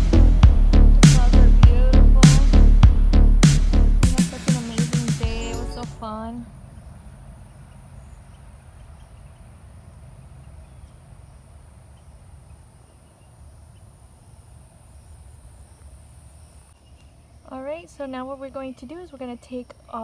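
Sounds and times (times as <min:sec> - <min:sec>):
faint low rumble: 0:00.0 - 0:04.3
crickets chirping: 0:06.0 - 0:20.0.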